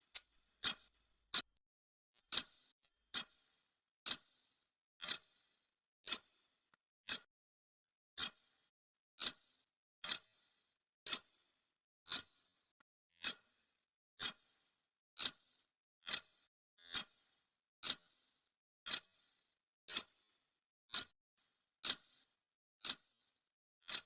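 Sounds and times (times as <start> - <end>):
short high tones: 0.2 - 1.4
high ringing tone: 0.2 - 1.6.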